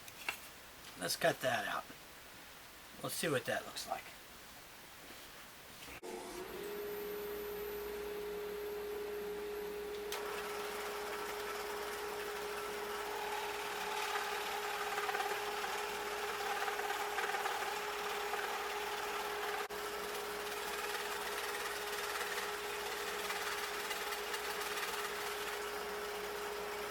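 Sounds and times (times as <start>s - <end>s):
power saw motor hum: 6.0s - 26.9s
saw cutting wood: 10.2s - 26.9s.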